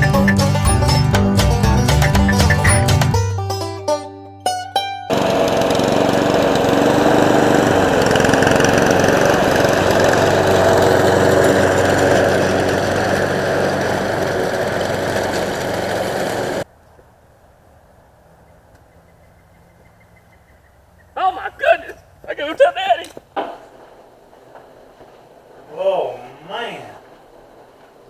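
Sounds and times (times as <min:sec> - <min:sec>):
motor engine running: 0:05.1 - 0:16.6.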